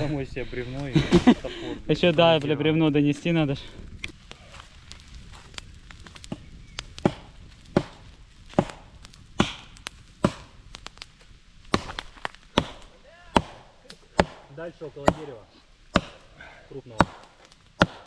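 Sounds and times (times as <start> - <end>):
axe chopping into log: 11.7 - 16.3, 17.0 - 18.0.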